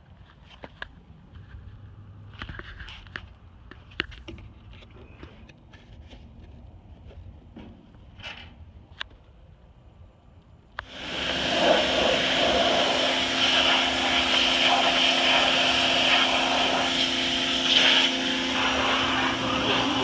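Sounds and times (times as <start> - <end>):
electric blower rushing hiss: 10.8 - 20.0.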